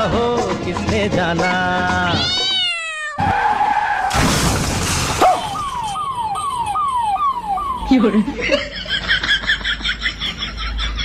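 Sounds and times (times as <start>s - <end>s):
cartoon meow cry: 1.4s - 3.3s
tyre skid screech: 3.2s - 4.2s
crash: 3.2s - 5.8s.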